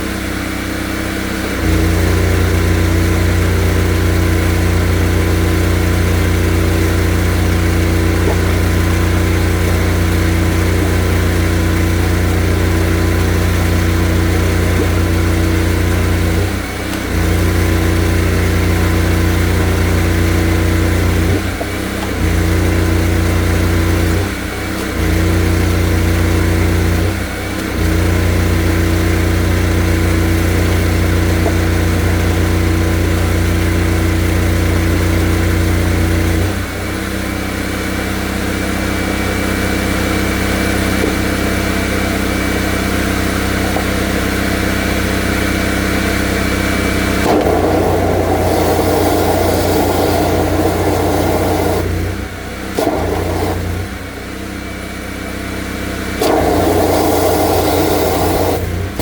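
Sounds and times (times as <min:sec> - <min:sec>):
drain jetter engine running: 0:00.0 - 0:59.0.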